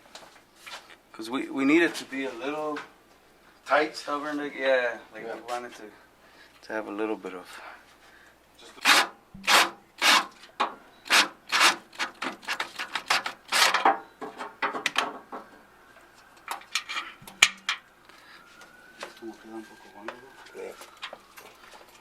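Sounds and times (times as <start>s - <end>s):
hand tool rasping sheet metal: 8.8s - 10.4s, 11.0s - 13.9s.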